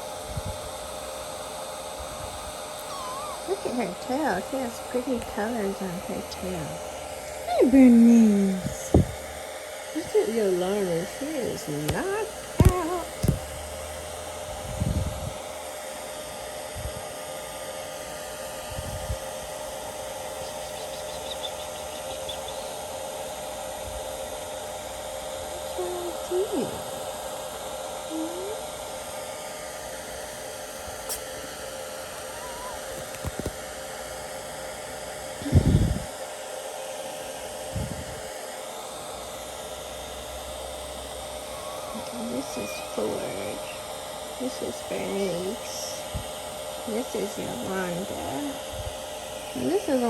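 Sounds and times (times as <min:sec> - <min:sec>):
hair dryer running: 0:00.0 - 0:50.0
soft low thumps: 0:08.6 - 0:09.2
small electric motor whirring: 0:40.4 - 0:50.0.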